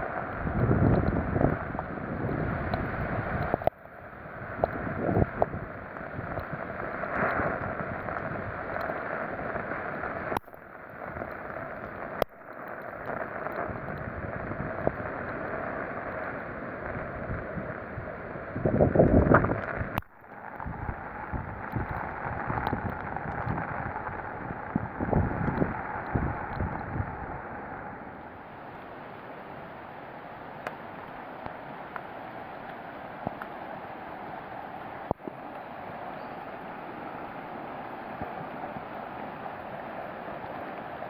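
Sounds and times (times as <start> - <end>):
wind buffeting microphone: 0.0 - 3.7, 4.3 - 6.8, 13.6 - 15.5, 16.8 - 20.0, 20.6 - 28.0
strong wind gusts: 0.0 - 10.4, 13.2 - 28.9.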